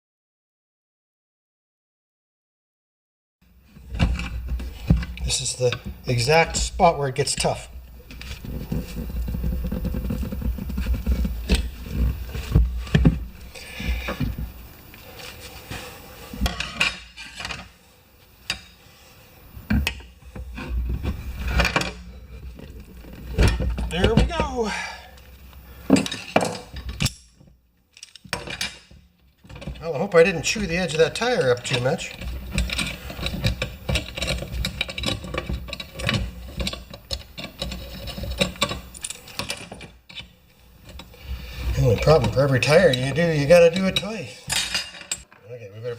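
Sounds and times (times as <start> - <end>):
tire rim being handled: 3.6 - 45.3
metal hand tools clanking: 29.5 - 40.3, 41.7 - 45.3.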